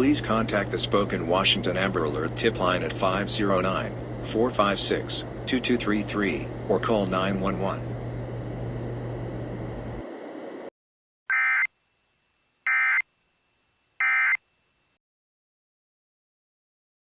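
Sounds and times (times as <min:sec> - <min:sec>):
low hum: 0:00.0 - 0:10.7.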